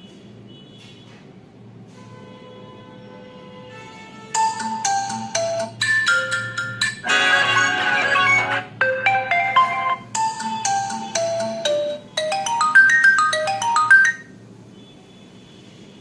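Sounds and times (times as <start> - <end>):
phone ringtone melody: 4.4 - 14.4.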